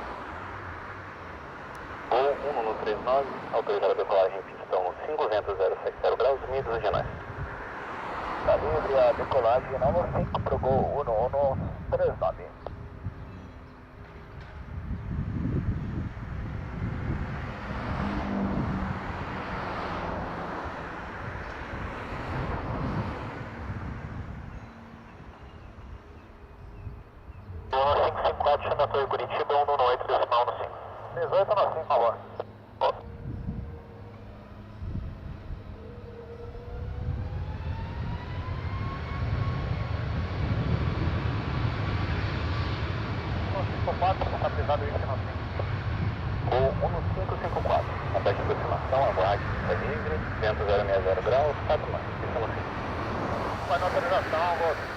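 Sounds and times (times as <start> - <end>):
jet engines roaring: 0.0 - 26.0, 27.2 - 54.9
jet engines spooling up: 36.3 - 54.9.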